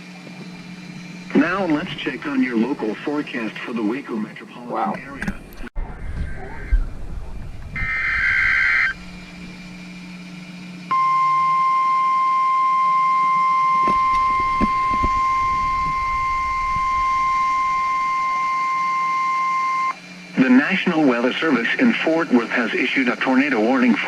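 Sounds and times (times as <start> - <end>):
steady high alarm tone: 0.0 - 3.6, 7.7 - 20.6
warbling digital data screech: 7.7 - 9.8.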